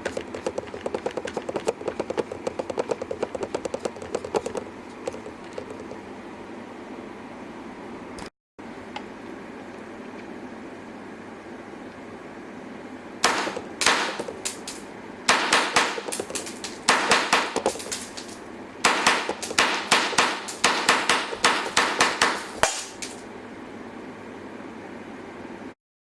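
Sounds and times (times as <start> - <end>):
toy gun firing sharp cracks: 13.2 - 23.2.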